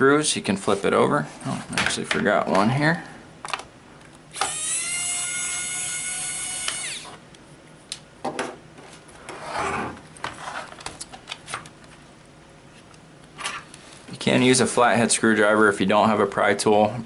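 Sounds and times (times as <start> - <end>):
electric screwdriver whirring: 4.3 - 7.2.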